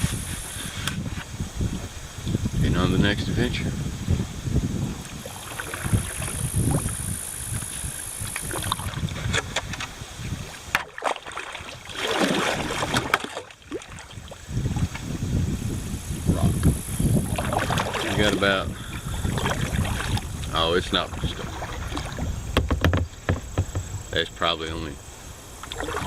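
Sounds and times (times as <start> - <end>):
wind rumbling on microphone: 0.0 - 26.0
water moving around boat: 4.4 - 26.0
paddle blades splashing: 4.9 - 15.2, 15.8 - 24.2, 25.4 - 26.0.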